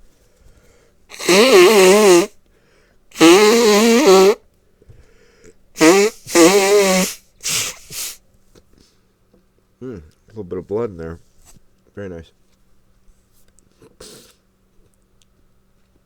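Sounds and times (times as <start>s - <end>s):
man blowing his nose: 1.1s - 2.4s, 3.1s - 4.4s, 5.8s - 8.2s, 14.0s - 14.4s.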